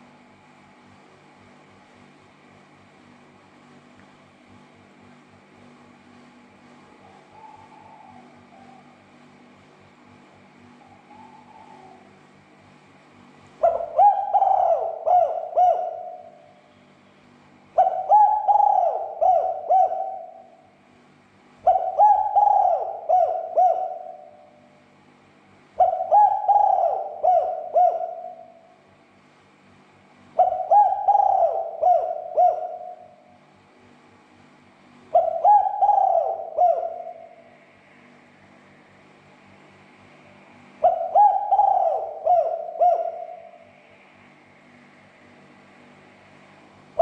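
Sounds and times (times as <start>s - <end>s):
dove cooing: 7.0s - 9.2s, 10.8s - 12.2s, 13.6s - 16.6s, 17.8s - 20.8s, 21.6s - 24.6s, 25.8s - 28.8s, 30.4s - 33.4s, 35.1s - 37.5s, 40.8s - 43.7s.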